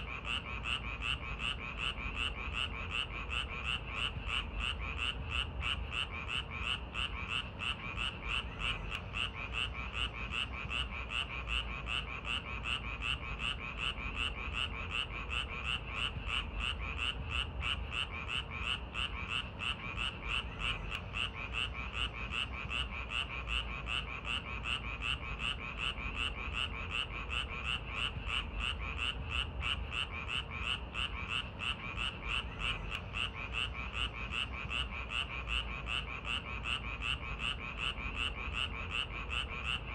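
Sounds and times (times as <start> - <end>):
frogs croaking: 0.0 - 39.9.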